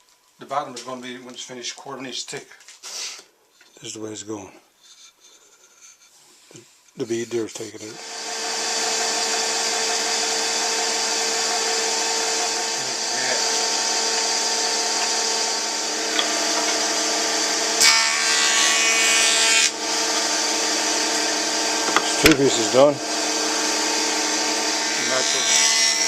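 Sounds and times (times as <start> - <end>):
power tool cutting wood hissing: 7.9 - 26.0
power tool running: 7.9 - 26.0.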